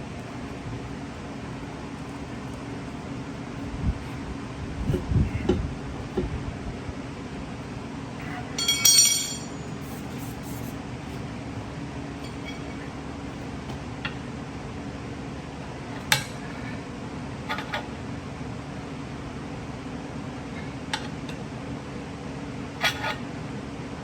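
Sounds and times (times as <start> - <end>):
steady low hum: 0.0 - 24.0
tire irons clinking on rim: 8.6 - 9.8.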